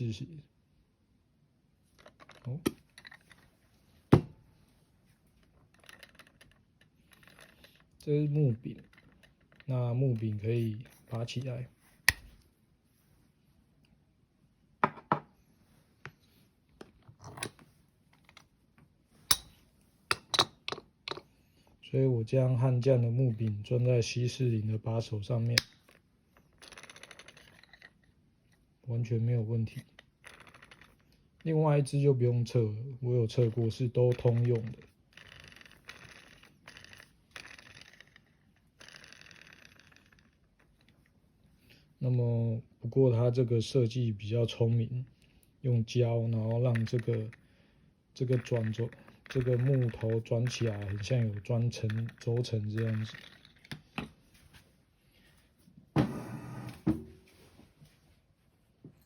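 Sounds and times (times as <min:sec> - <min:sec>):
coffee grinder parts clicking: 0:02.0 - 0:03.5, 0:05.6 - 0:12.4, 0:25.4 - 0:28.1, 0:29.8 - 0:31.0, 0:33.4 - 0:41.0, 0:46.5 - 0:47.4, 0:48.3 - 0:54.1.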